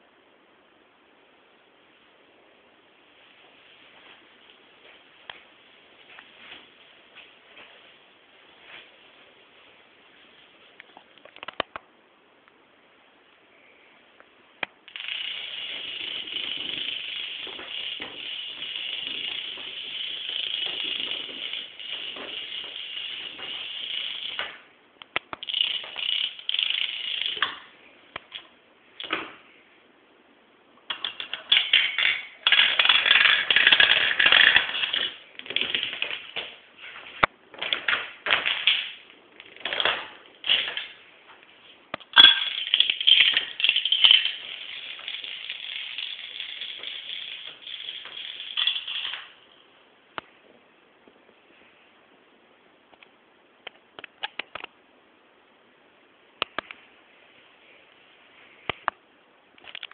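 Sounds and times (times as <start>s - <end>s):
dominoes toppling clatter: 14.9s - 24.6s, 25.4s - 28.4s, 30.9s - 36.6s, 37.6s - 41.0s, 42.1s - 49.5s.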